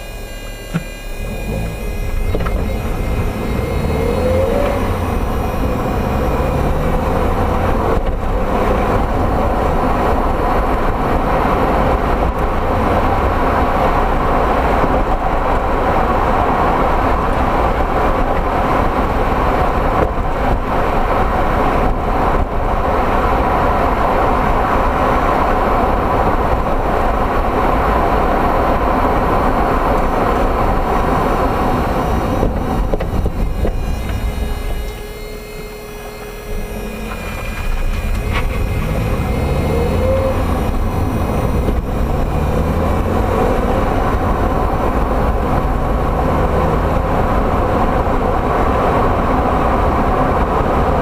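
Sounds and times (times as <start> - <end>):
car road rumble: 0.0 - 51.0
suspension knocking clunk: 32.4 - 34.9.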